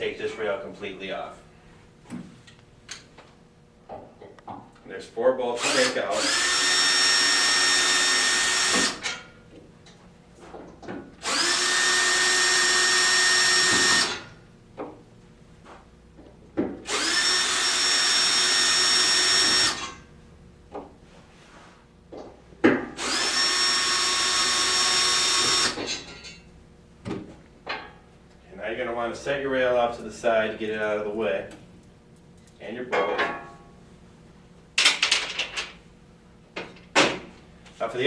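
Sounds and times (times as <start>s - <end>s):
cordless drill whining: 5.6s - 9.2s, 11.2s - 14.4s, 16.9s - 20.0s, 23.0s - 26.0s.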